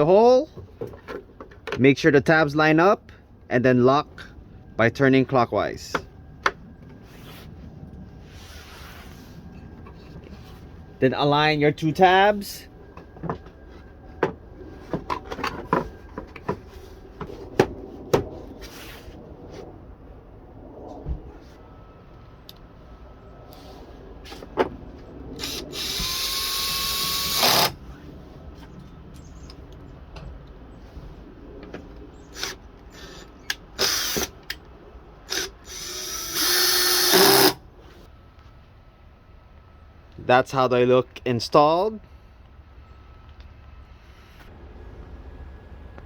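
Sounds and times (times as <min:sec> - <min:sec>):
power drill driving screws: 0:25.4 - 0:27.8, 0:32.4 - 0:34.4, 0:35.3 - 0:37.6.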